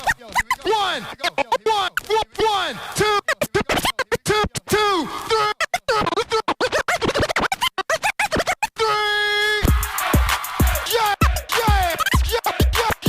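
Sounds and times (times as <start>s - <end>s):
turntable scratching: 0.0s - 8.8s, 9.6s - 13.0s
intro music: 9.7s - 13.0s.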